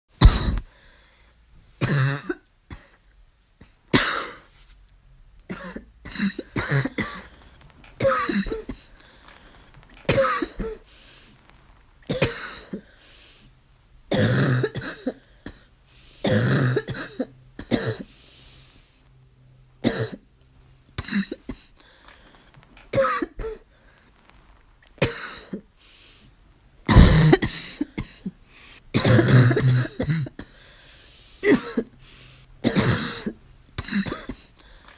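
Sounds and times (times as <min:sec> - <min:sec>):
harsh barking coughs: 0:00.2 - 0:00.7, 0:01.8 - 0:03.0, 0:03.9 - 0:04.5, 0:05.5 - 0:07.3, 0:08.0 - 0:08.9, 0:10.1 - 0:10.8, 0:12.1 - 0:12.8, 0:14.1 - 0:15.7, 0:16.3 - 0:18.1, 0:19.8 - 0:20.2, 0:21.0 - 0:21.7, 0:23.0 - 0:23.6, 0:25.0 - 0:25.6, 0:26.9 - 0:28.3, 0:28.9 - 0:30.6, 0:31.4 - 0:31.9, 0:32.6 - 0:34.5.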